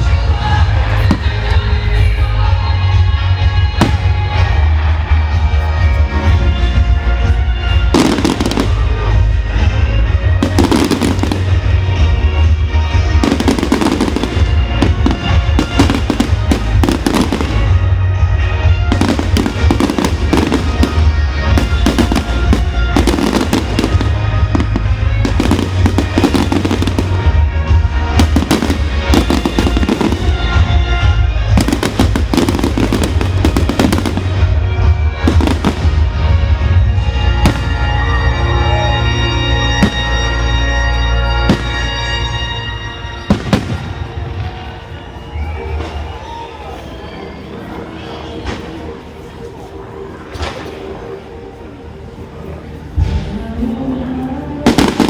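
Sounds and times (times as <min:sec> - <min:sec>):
loud music: 0:00.0 - 0:45.5, 0:53.0 - 0:55.0
fireworks bangs and crackles: 0:00.0 - 0:47.1, 0:52.4 - 0:53.7, 0:54.6 - 0:55.0.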